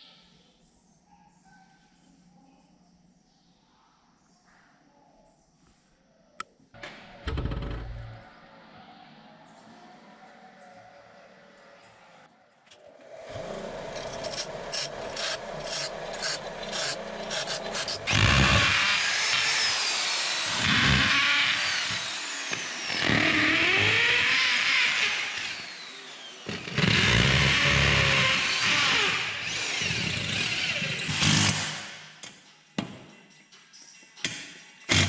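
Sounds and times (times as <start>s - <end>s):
power tool grinding metal: 13.1s - 31.9s.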